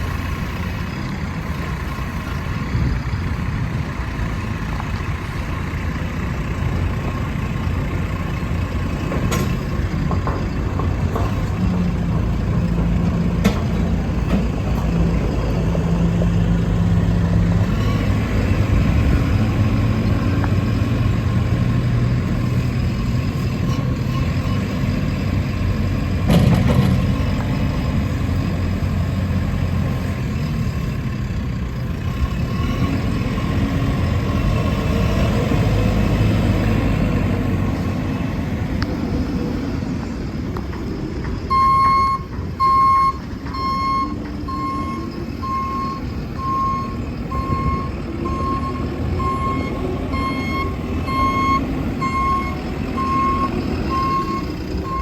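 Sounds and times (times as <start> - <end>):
backhoe diesel engine running: 0.0 - 55.0
reversing alarm beeping: 41.5 - 55.0.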